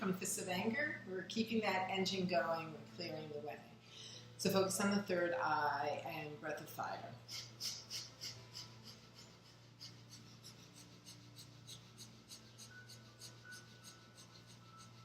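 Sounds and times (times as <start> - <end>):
rapid forceful breathing through nose: 7.3 - 15.0.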